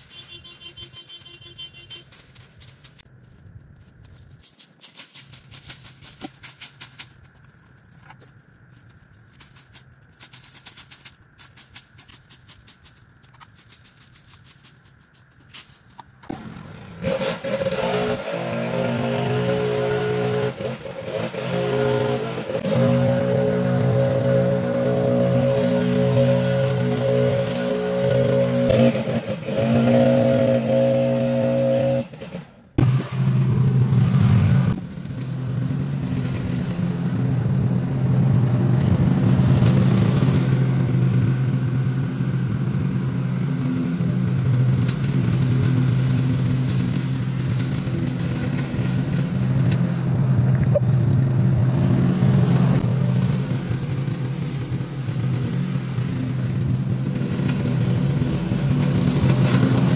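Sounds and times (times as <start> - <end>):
mower engine running: 12.8 - 59.9.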